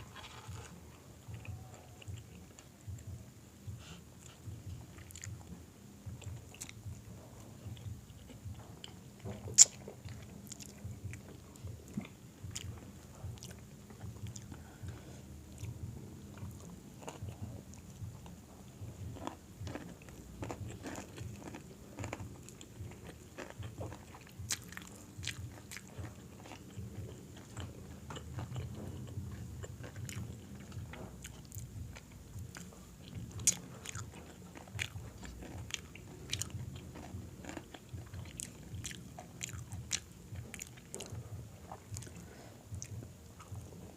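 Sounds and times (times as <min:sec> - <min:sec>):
fried chicken crunching: 0:19.1 - 0:41.2.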